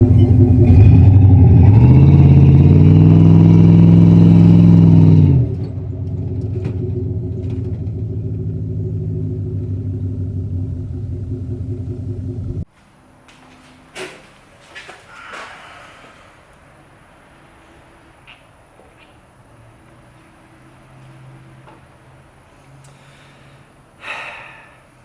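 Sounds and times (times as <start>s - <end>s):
truck engine revving and idling: 0.0s - 12.7s.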